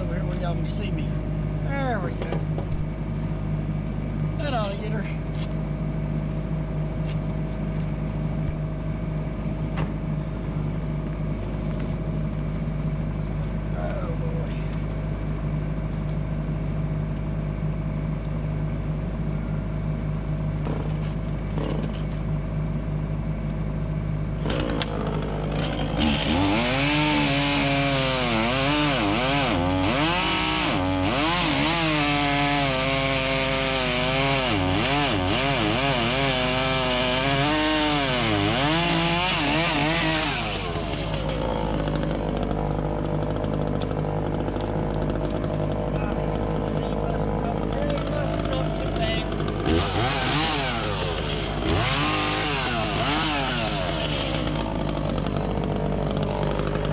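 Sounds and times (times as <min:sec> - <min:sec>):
diesel engine idling: 0:00.0 - 0:20.6, 0:21.2 - 0:31.2, 0:40.0 - 0:56.9
chainsaw cutting log: 0:24.3 - 0:56.9.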